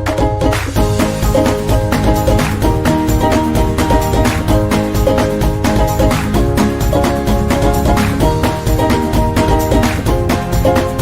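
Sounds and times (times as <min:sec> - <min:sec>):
upbeat background music: 0:00.0 - 0:11.0.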